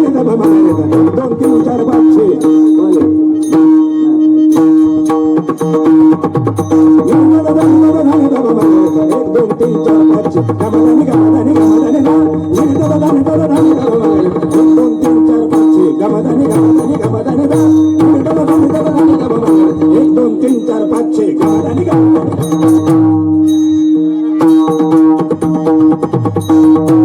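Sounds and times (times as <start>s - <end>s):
hand drums rhythm: 0.0s - 27.0s.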